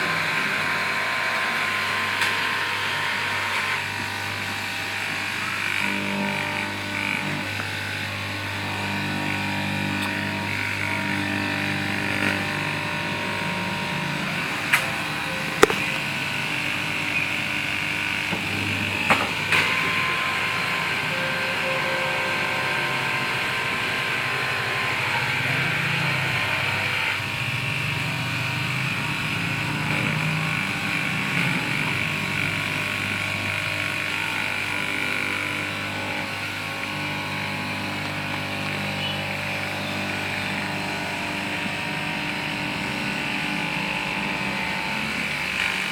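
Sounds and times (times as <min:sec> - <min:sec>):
fabric cutting machine motor hum: 0:00.0 - 0:45.9
sharp clicks and knocks: 0:15.6 - 0:16.0.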